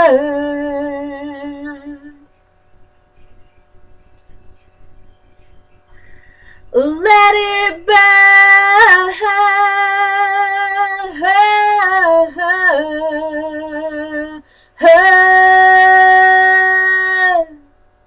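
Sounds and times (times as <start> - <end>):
woman singing a cappella: 0.0 - 2.3, 6.7 - 17.8.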